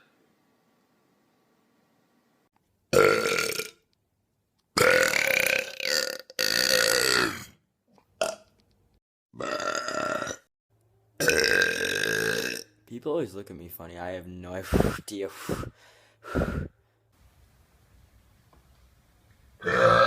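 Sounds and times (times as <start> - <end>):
loud human belches: 2.9 - 3.8, 4.8 - 7.6, 8.2 - 8.4, 9.4 - 10.5, 11.2 - 12.7, 19.6 - 20.0.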